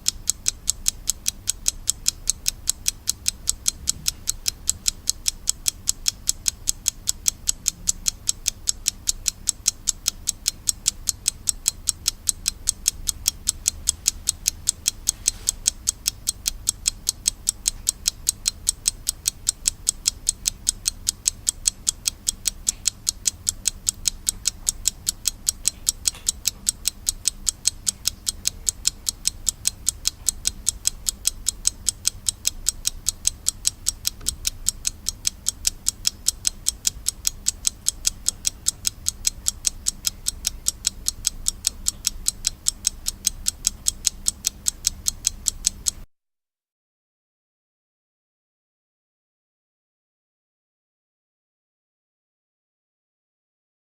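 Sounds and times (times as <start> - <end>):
mechanical alarm clock ticking: 0.0 - 46.1.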